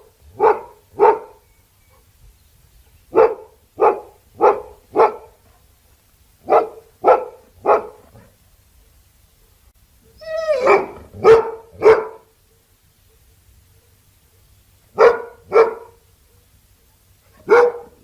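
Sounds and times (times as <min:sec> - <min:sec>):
dog barking: 0:00.0 - 0:02.1, 0:03.1 - 0:05.5, 0:06.4 - 0:08.4, 0:10.5 - 0:18.0
dog whining bark: 0:00.3 - 0:02.1, 0:03.1 - 0:05.4, 0:06.5 - 0:08.3, 0:10.0 - 0:12.3, 0:15.0 - 0:16.5, 0:17.3 - 0:18.0.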